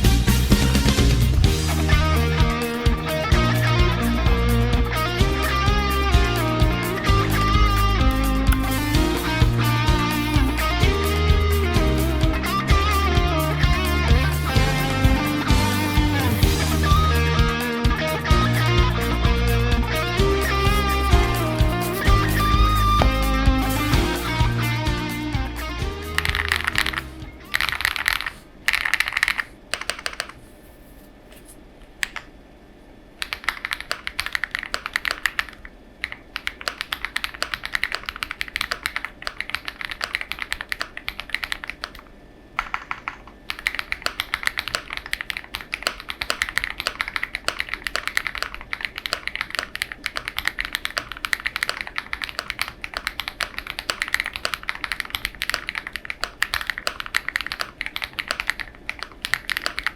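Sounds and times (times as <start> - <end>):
mechanical keyboard typing: 8.1 - 17.2, 20.4 - 23.2, 26.1 - 30.4, 33.2 - 59.9.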